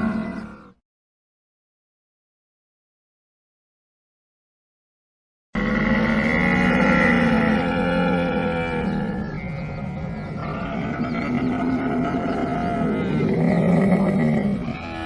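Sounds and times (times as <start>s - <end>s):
camel calf calling: 5.6s - 15.0s.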